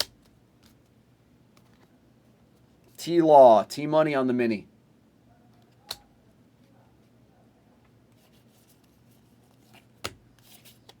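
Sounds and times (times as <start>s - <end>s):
trading cards rustling: 8.2s - 11.0s.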